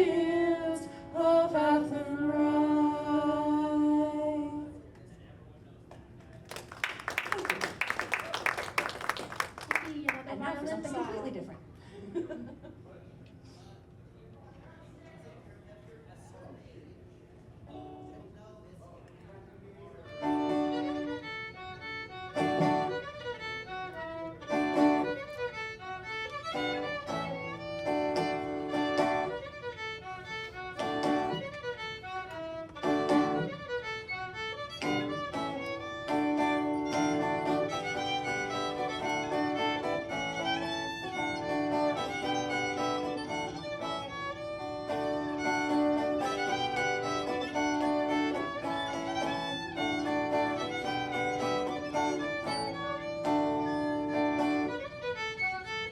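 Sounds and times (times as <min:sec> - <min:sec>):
fiddle playing folk tune: 0:20.0 - 0:55.9.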